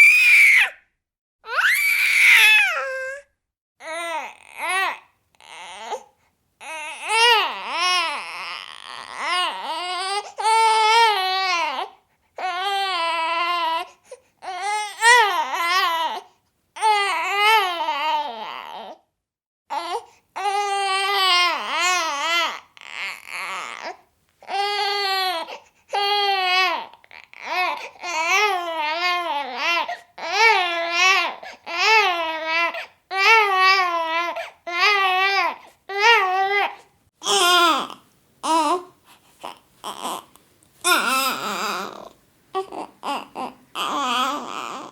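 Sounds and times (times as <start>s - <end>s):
baby fussing and babbling: 19.7s - 44.9s.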